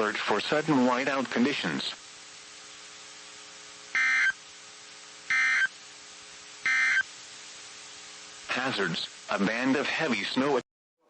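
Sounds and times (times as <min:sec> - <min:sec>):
faint steady hum: 0:00.0 - 0:10.6
digital data tone bursts: 0:03.9 - 0:04.4, 0:05.3 - 0:05.8, 0:06.6 - 0:07.1.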